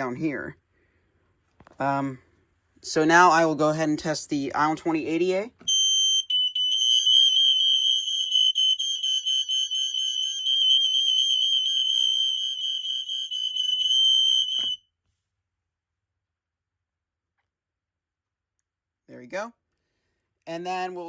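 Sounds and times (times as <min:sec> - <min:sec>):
smoke alarms shrieking: 0:05.7 - 0:14.8.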